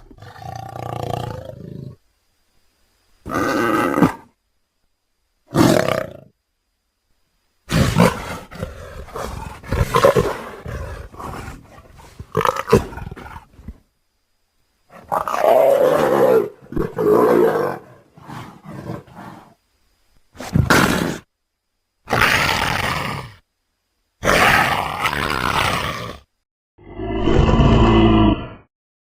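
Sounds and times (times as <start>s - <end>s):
animal growling: 0.0s - 2.0s, 7.7s - 13.8s, 14.9s - 19.6s, 22.1s - 23.4s, 24.2s - 28.7s
loud roars: 26.8s - 28.7s.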